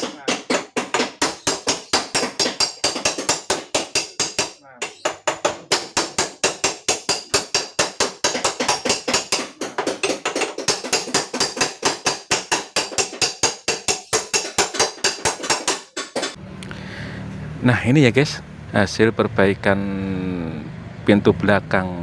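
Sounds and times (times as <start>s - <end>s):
hammer blows on sheet metal: 0.0s - 16.4s.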